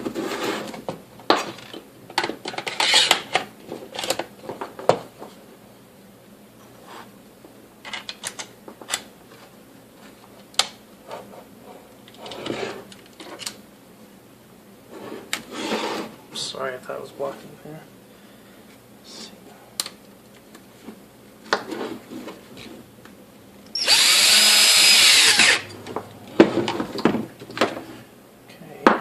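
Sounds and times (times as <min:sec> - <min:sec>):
plastic parts clicking and scraping: 0:01.5 - 0:04.3.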